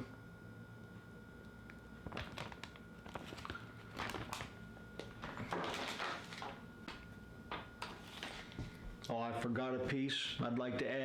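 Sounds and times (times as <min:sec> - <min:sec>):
plastic rustling: 0:02.0 - 0:06.6.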